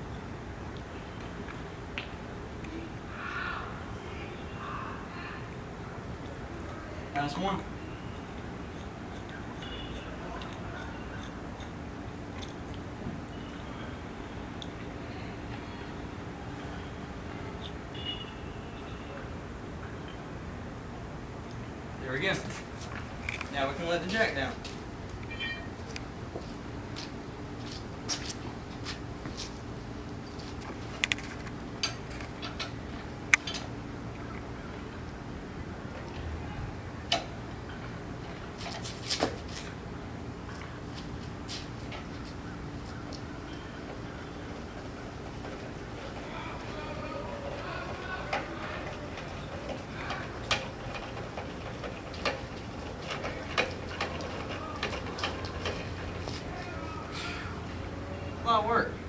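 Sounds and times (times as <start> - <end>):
car jack clicking and clinking: 43.4 - 56.6.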